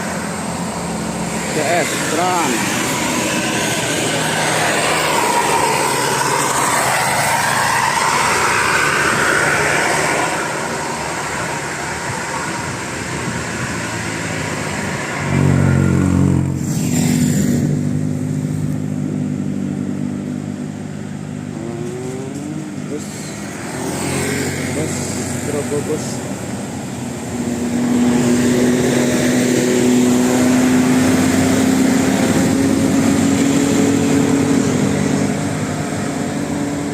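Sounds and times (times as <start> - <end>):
bus engine running: 0.0 - 36.9
bus passing: 0.0 - 36.9.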